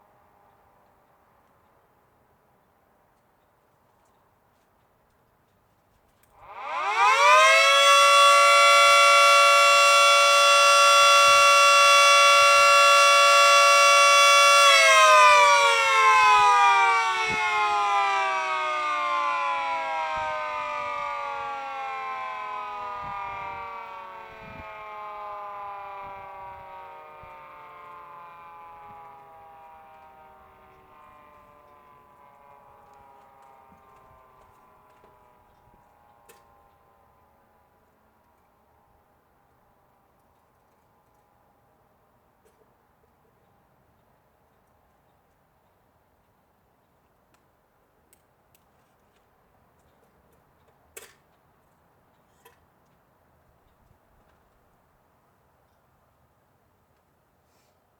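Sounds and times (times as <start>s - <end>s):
dual-tone warning siren: 6.4s - 38.0s.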